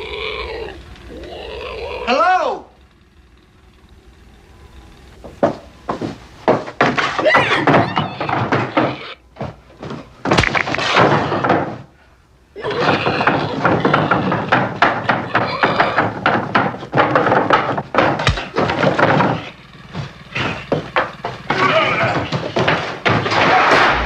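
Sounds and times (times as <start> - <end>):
thrashing knocking and scraping: 5.0 - 24.0
heavy blow impact: 23.2 - 24.0.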